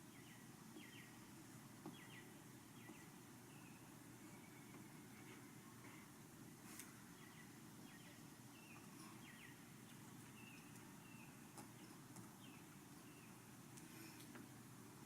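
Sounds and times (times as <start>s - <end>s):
faint high chirps: 2.0s - 6.0s.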